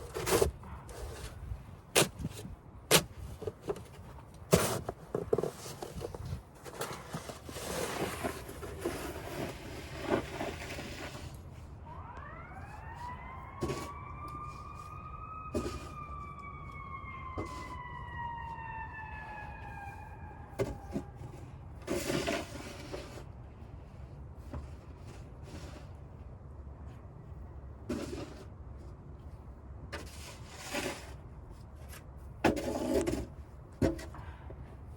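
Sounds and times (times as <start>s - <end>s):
emergency vehicle siren wail: 11.8s - 21.7s.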